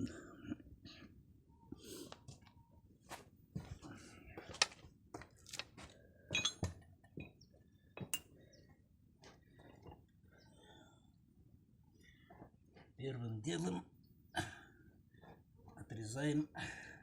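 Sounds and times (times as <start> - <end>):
metal tools clinking: 6.3 - 6.7.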